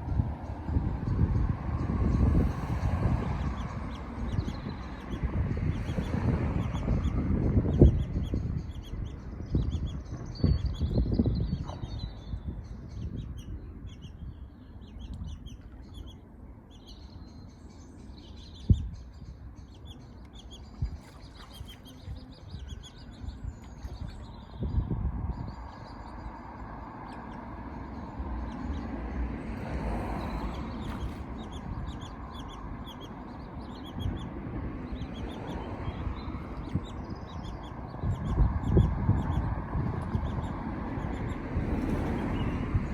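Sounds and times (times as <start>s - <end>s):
birds chirping: 0.0s - 42.9s
low rumble: 22.1s - 42.9s.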